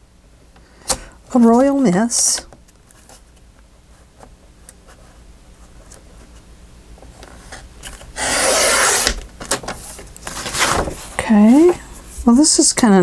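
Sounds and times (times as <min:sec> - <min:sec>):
paper rustling: 0:07.2 - 0:12.3.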